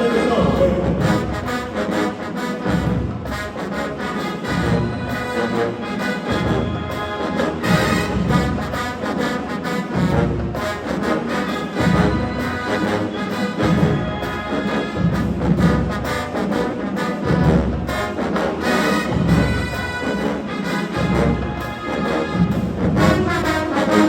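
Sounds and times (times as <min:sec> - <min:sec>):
marching band brass: 0:00.0 - 0:24.0
low drums beat: 0:00.3 - 0:01.6.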